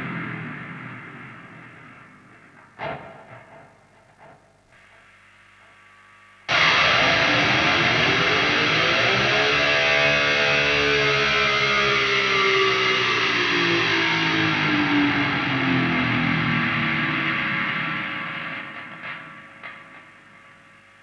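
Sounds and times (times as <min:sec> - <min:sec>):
distorted electric guitar: 0:06.5 - 0:20.5.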